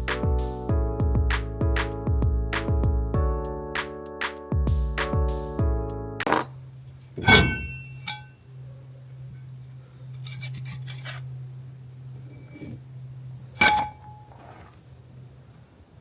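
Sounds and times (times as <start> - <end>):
low steady hum: 6.3 - 16.0
metal brake parts clinking: 7.1 - 8.4, 13.6 - 14.4.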